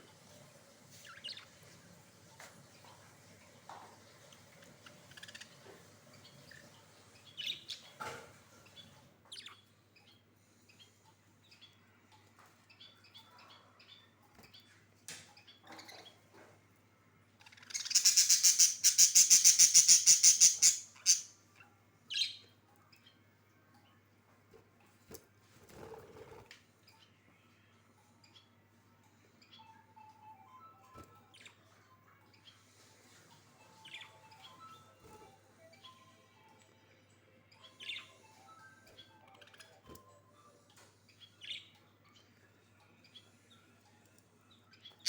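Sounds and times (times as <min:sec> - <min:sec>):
budgerigars chirping: 0:17.4 - 0:21.3.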